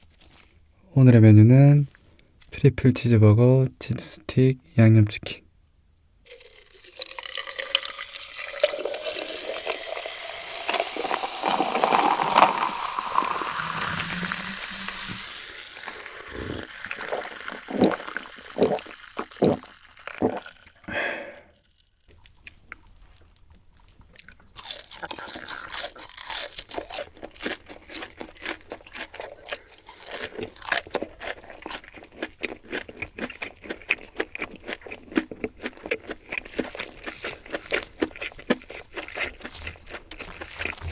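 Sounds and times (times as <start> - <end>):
crunching fried food: 6.3 - 21.0, 21.6 - 40.9
biting and chewing: 8.5 - 20.8, 22.1 - 40.9
rustling hiss: 9.1 - 19.7.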